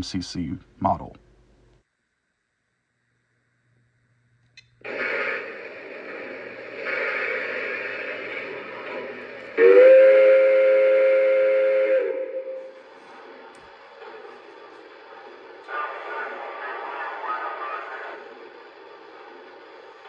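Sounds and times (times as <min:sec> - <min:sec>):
model locomotive steam hiss: 0:04.8 - 0:20.0
chime steam whistle: 0:09.6 - 0:12.8.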